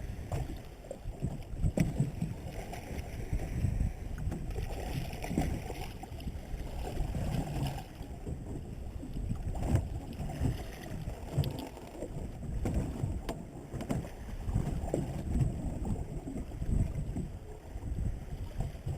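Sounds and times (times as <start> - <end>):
water sloshing against boat hull: 0.0 - 18.9
wind buffeting microphone: 0.0 - 18.9.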